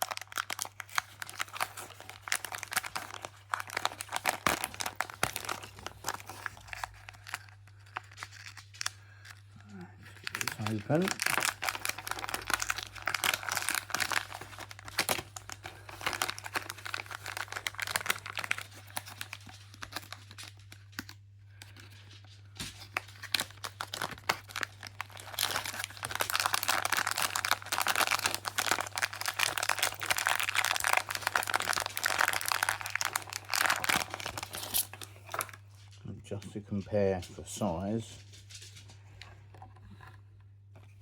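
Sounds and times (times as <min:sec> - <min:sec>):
packaging crinkling and tearing: 0:00.0 - 0:36.0.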